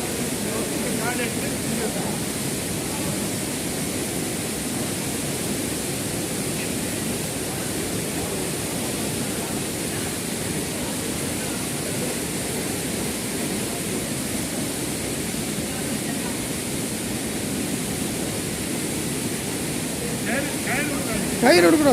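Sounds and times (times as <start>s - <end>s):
waterfall and stream rushing: 0.0s - 21.9s.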